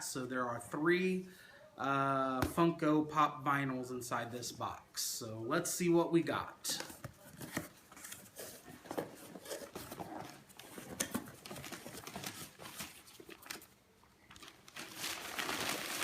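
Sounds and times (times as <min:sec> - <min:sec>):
packing paper rustling: 0:07.2 - 0:16.0.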